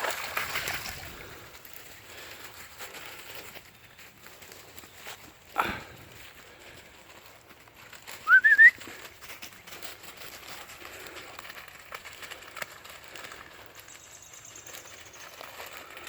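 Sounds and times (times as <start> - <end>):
faint ticks and rustling: 0.0 - 16.0
person whistling: 8.2 - 8.8.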